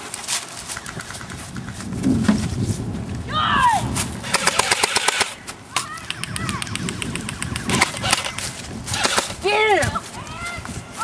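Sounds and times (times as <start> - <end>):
airsoft guns firing bursts: 4.2 - 5.4, 6.9 - 9.5.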